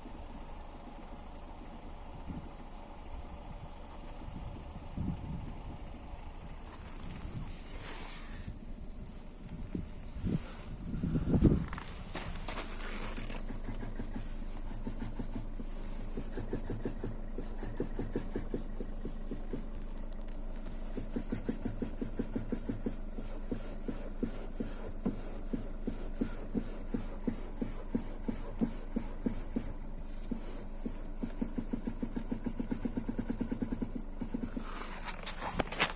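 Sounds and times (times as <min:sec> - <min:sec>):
engine hum: 0:00.0 - 0:35.9
rapid knocking: 0:20.9 - 0:29.7.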